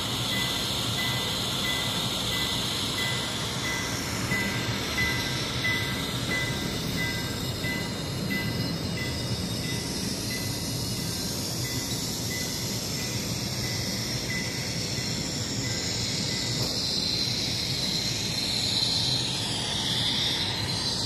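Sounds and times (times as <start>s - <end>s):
turbine hiss and whine: 0.0s - 21.0s.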